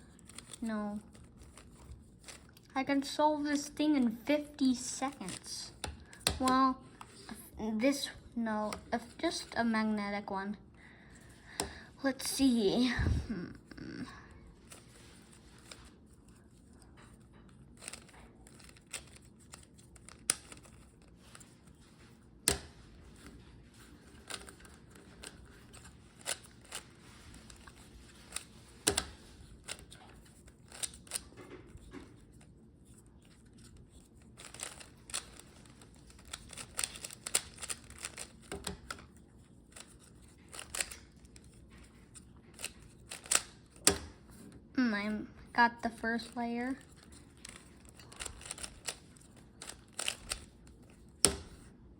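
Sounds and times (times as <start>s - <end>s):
puzzle cube plastic clicks: 14.7s - 44.3s, 46.2s - 51.7s.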